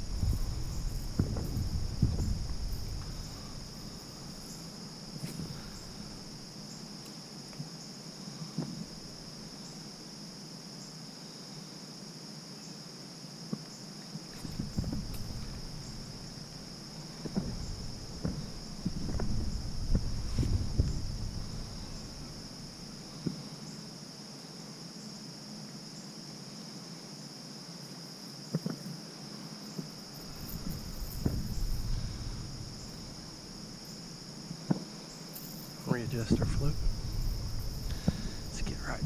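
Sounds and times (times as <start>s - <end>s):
knocks: 0.0s - 3.6s, 14.4s - 16.3s, 17.0s - 22.5s, 29.8s - 33.5s
low rustling: 0.0s - 6.6s, 14.3s - 23.2s, 30.2s - 39.0s
insect chorus trilling: 0.0s - 39.0s.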